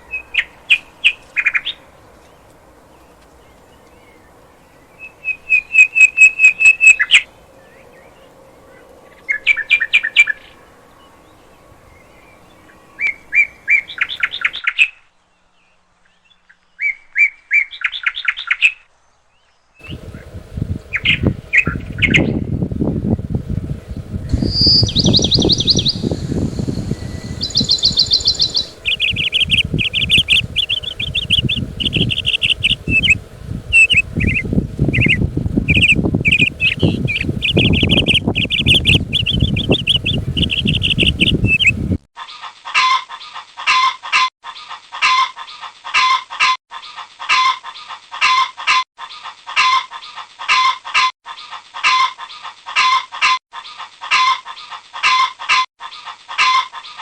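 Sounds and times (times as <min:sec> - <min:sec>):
low rustling noise: 0:19.8 - 0:42.0
small birds chirping: 0:19.8 - 0:42.0
chicken clucking: 0:24.3 - 0:34.4, 0:35.0 - 0:41.8.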